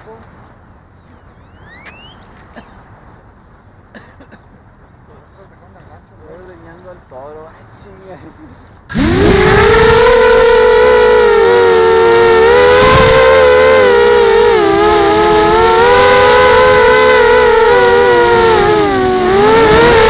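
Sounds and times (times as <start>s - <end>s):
quadcopter motors whining: 1.2s - 3.0s, 8.9s - 20.0s.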